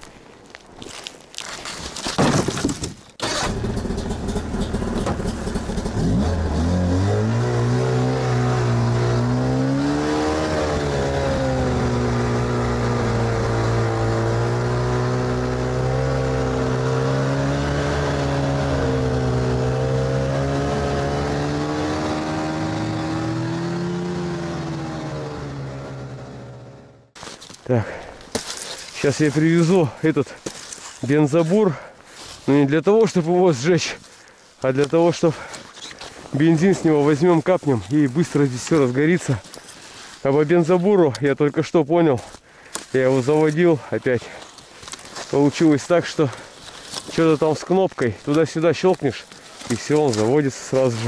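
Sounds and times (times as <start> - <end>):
snowmobile engine revving: 3.2 - 27.2.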